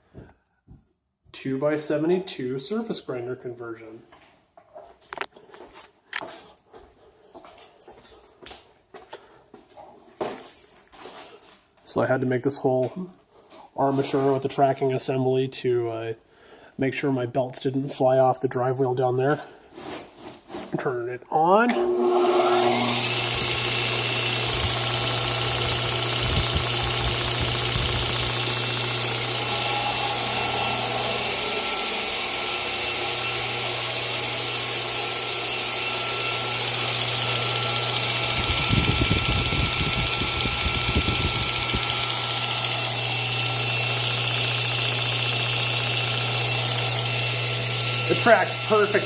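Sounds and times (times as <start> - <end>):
belt grinder running: 21.7 - 49.0.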